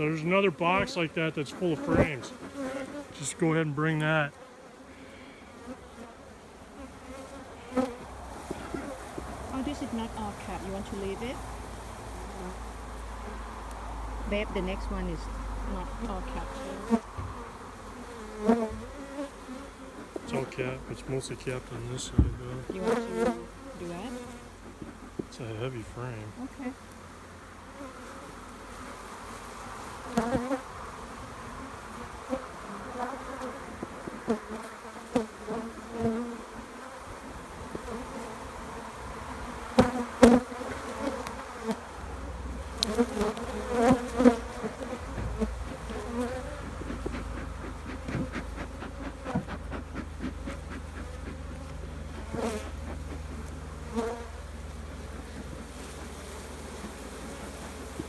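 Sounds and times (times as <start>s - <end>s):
honeybees buzzing: 0.0s - 58.0s
sharp knocks: 22.2s - 22.8s.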